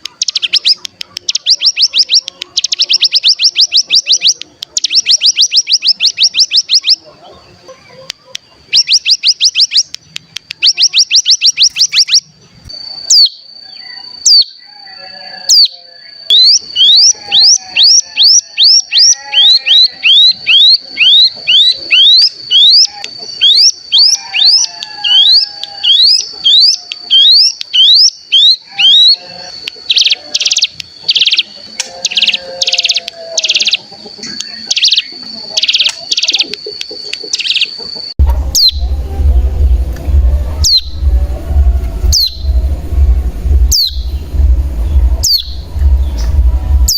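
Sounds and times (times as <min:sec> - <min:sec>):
fast rattling bird trills: 0:00.0 - 0:07.0, 0:08.5 - 0:12.4, 0:16.3 - 0:29.2, 0:29.8 - 0:33.9, 0:34.5 - 0:38.9, 0:43.2 - 0:46.9
bird singing: 0:00.0 - 0:46.9
sharp rising chip notes: 0:38.2 - 0:46.9.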